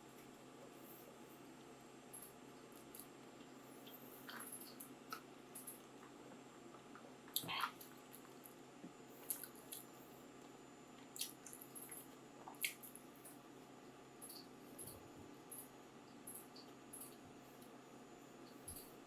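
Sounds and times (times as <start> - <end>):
mouth chewing soft food: 2.7 - 10.0, 11.0 - 13.4.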